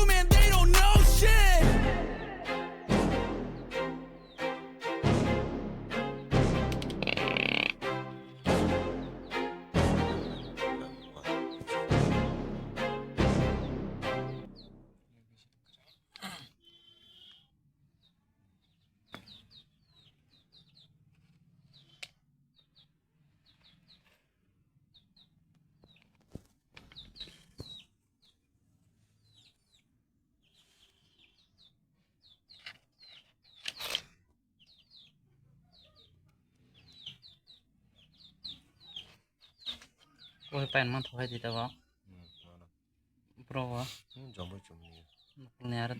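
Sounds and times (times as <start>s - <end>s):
birds chirping: 0.0s - 14.8s.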